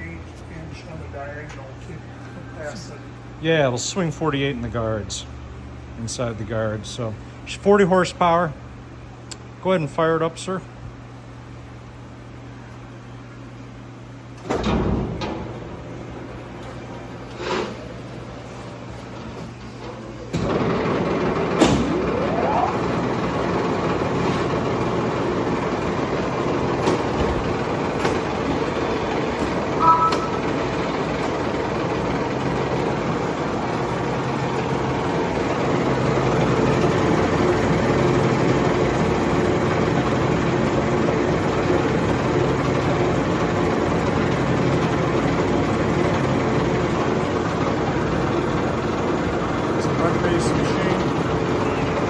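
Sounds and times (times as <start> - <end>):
short beep: 29.8 - 30.6.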